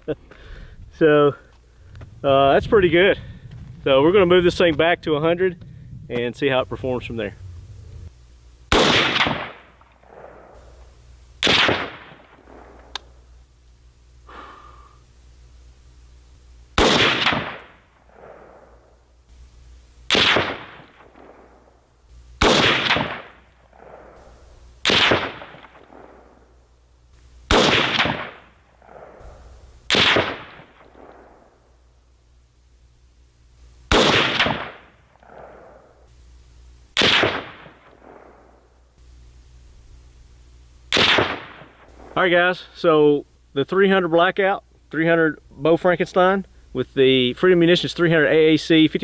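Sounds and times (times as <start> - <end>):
rolling echo of gunshots: 8.7 - 10.6, 11.4 - 12.9, 16.8 - 18.9, 20.1 - 21.8, 22.4 - 26.5, 27.5 - 29.3, 29.9 - 31.6, 33.9 - 36.0, 37.0 - 38.7, 40.9 - 42.2
rifle shots: 8.7 - 10.7, 11.4 - 13.2, 16.8 - 18.9, 20.1 - 21.8, 22.4 - 26.6, 27.5 - 31.6, 33.9 - 36.0, 37.0 - 38.7, 40.9 - 42.3.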